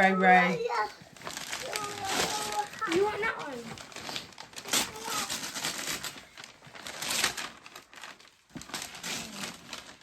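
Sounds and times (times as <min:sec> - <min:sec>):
wrapping paper rustling: 0:00.4 - 0:10.0.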